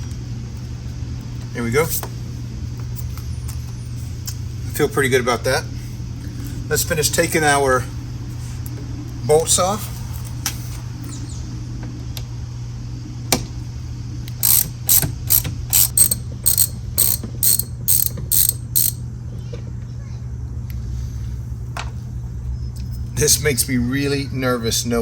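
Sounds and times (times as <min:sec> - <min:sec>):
hand ratchet clicks: 0:14.4 - 0:19.0.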